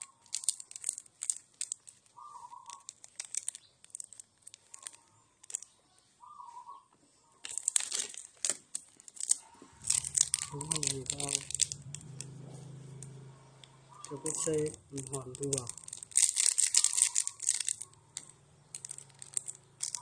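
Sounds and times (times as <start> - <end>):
chewing and utensil clicks: 9.1 - 12.4, 13.6 - 20.0.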